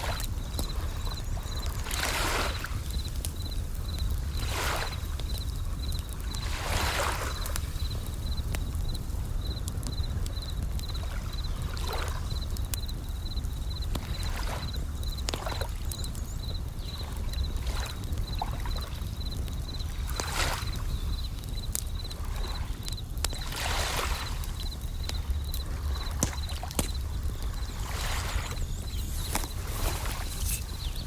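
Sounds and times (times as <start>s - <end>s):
campfire crackles: 0.0s - 31.0s
crickets chirping: 0.0s - 31.0s
waves washing: 27.8s - 31.0s.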